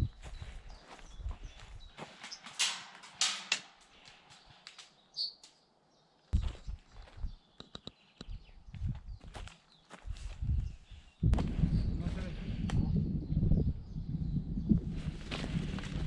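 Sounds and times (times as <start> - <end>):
footsteps: 0.1 - 4.5
rustling in undergrowth: 15.0 - 16.0.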